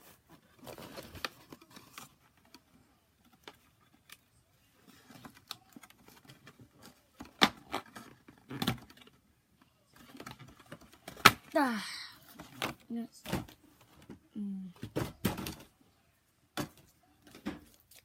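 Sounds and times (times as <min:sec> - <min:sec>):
toy packaging rustling: 0:00.1 - 0:14.1.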